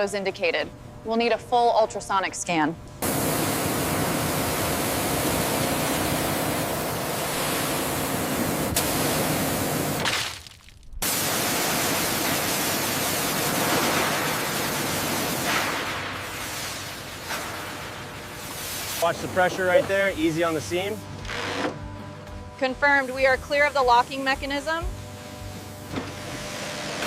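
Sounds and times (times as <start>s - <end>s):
loud steady hiss: 3.0s - 10.0s, 11.0s - 21.0s.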